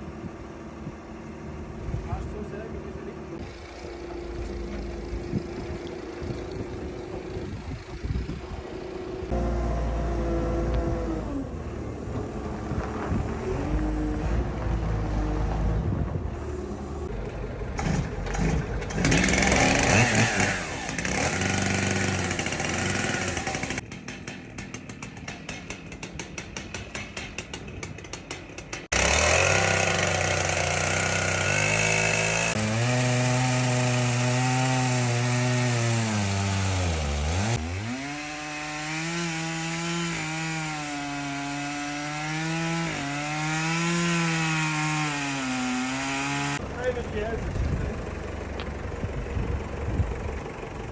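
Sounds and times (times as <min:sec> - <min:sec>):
chainsaw cutting wood: 0:16.4 - 0:46.6.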